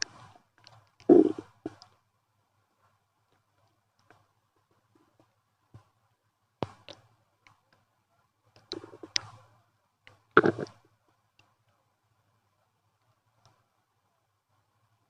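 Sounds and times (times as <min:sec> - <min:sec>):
stomach gurgling: 0:01.1 - 0:01.8, 0:08.7 - 0:09.4, 0:10.4 - 0:10.8.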